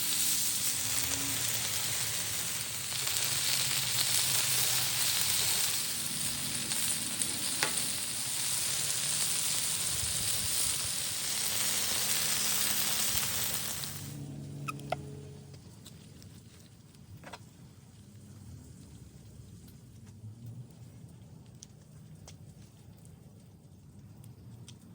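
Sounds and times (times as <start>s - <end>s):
food sizzling on a griddle: 0.0s - 14.2s.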